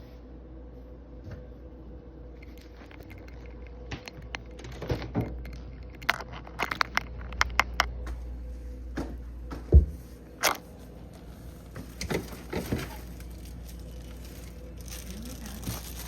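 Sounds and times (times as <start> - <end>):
steady low hum: 0.0 - 16.0
kitchen items clattering: 11.7 - 16.0.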